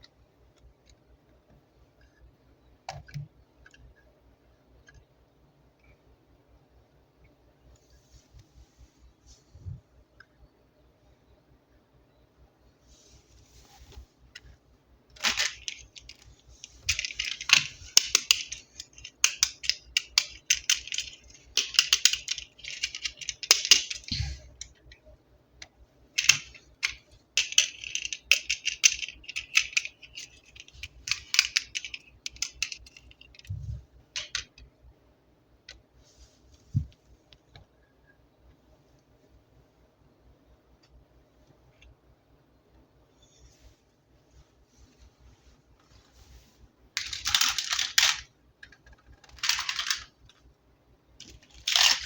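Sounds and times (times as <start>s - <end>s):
plastic packaging crinkling: 15.2s - 24.2s, 51.2s - 52.0s.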